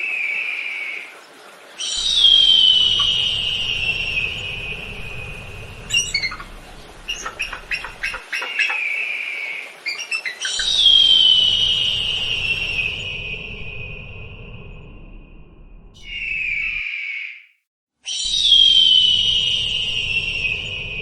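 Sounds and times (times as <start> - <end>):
eagle calling: 5.9 - 6.5, 7.1 - 11.6, 16.0 - 17.5.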